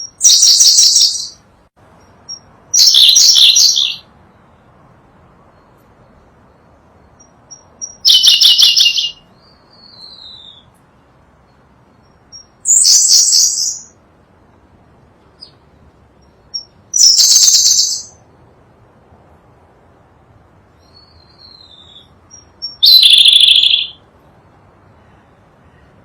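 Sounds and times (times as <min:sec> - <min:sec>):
bird trilling song: 0:00.0 - 0:01.4, 0:02.0 - 0:04.1, 0:06.5 - 0:10.8, 0:11.5 - 0:14.0, 0:15.3 - 0:18.2, 0:20.7 - 0:24.0.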